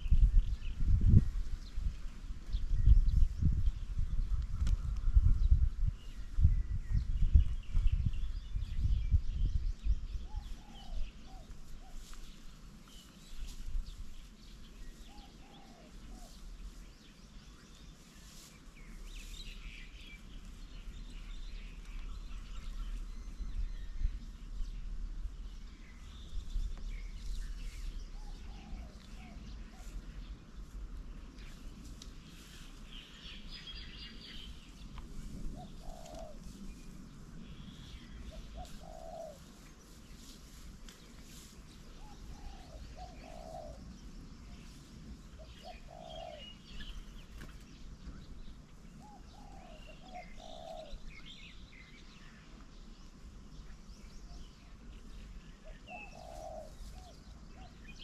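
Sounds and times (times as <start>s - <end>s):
small birds chirping: 0.0s - 58.0s
dove cooing: 15.1s - 16.3s, 35.4s - 36.5s, 38.1s - 39.4s, 42.0s - 44.0s, 45.4s - 47.1s, 49.0s - 51.1s, 55.6s - 57.8s.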